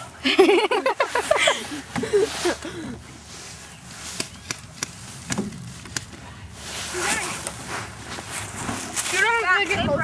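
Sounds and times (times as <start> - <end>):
voices: 6.1 - 7.9, 9.0 - 10.0.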